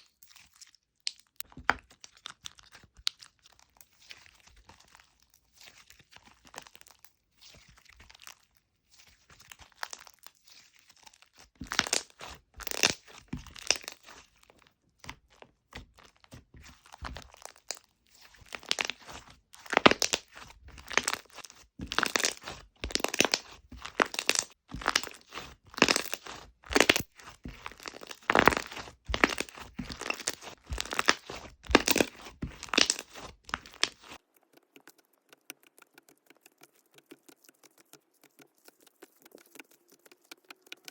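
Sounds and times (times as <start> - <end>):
slime crackling pops: 19.7 - 35.1.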